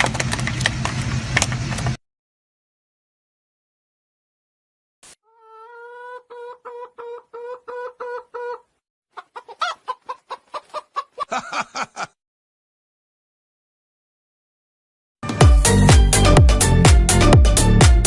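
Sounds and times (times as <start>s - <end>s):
chicken clucking and cackling: 5.2s - 12.1s.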